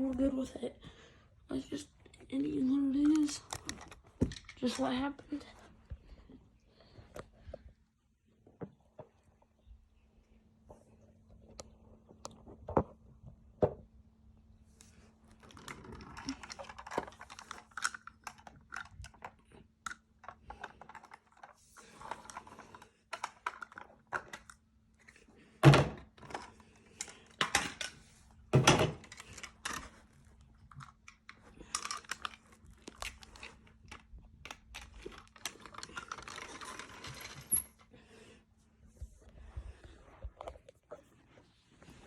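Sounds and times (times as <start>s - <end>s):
toy machinery clicks and rattles: 30.8s - 32.4s.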